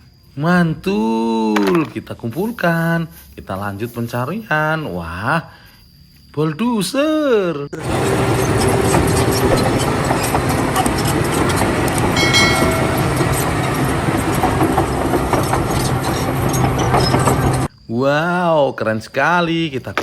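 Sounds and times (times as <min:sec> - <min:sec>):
mechanical clatter: 0:07.8 - 0:17.7
brief high tones: 0:12.2 - 0:14.0.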